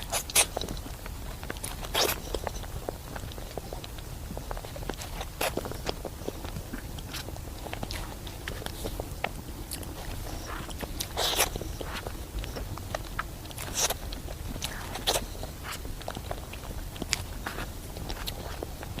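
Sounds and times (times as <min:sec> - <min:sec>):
chewing with wet mouth clicks: 0:00.0 - 0:19.0.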